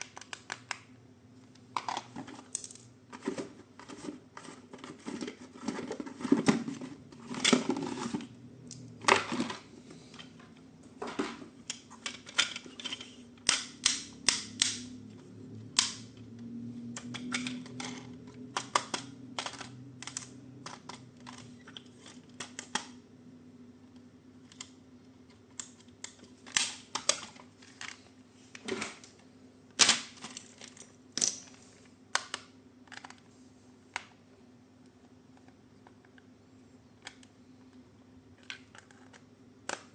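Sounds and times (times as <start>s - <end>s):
plastic parts clicking and tapping: 0.0s - 0.9s, 1.7s - 14.8s, 16.9s - 23.0s, 24.4s - 28.0s, 29.8s - 33.3s, 38.4s - 39.9s
faint low hum: 0.0s - 39.9s.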